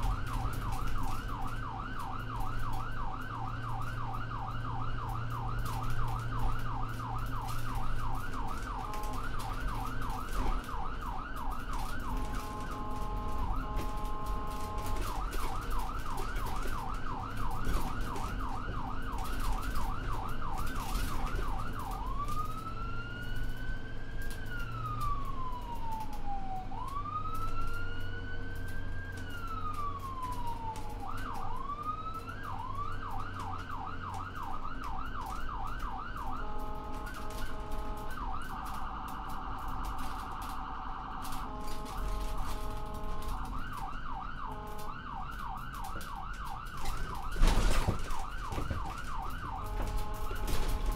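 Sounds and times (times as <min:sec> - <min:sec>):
electronic siren: 0:00.0 - 0:50.9.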